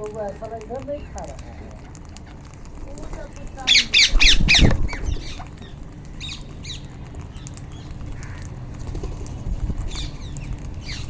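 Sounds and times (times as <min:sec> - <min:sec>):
parakeets giving shrill calls: 0:03.6 - 0:06.9, 0:09.9 - 0:11.0.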